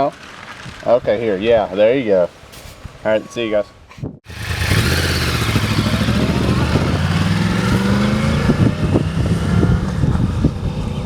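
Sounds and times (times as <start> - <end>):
motorcycle engine revving: 4.3 - 11.0.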